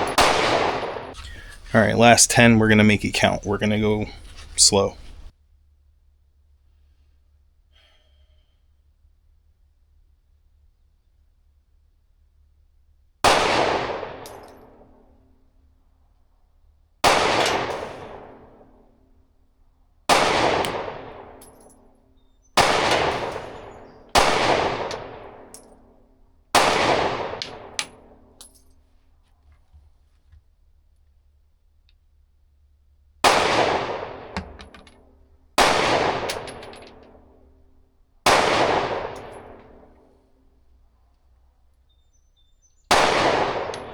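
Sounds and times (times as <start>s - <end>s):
pistol shots with echo: 0.0s - 5.3s, 13.2s - 15.0s, 17.0s - 18.9s, 20.1s - 21.8s, 22.6s - 28.4s, 33.2s - 34.8s, 35.6s - 37.4s, 38.2s - 40.0s, 42.9s - 43.9s.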